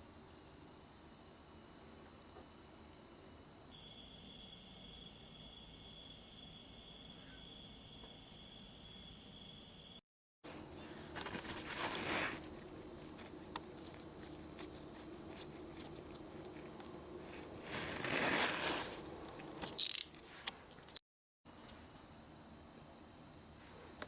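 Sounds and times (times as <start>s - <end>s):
rustling noise: 10.5s - 21.0s.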